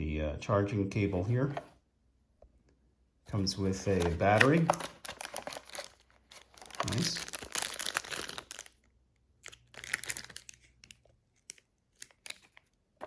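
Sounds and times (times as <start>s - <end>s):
packaging rustling and crinkling: 3.3s - 8.8s, 9.4s - 12.7s.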